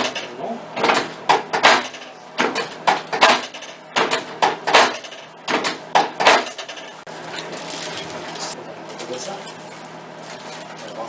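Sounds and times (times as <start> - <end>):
sharp slaps or knocks: 0.8 - 6.6.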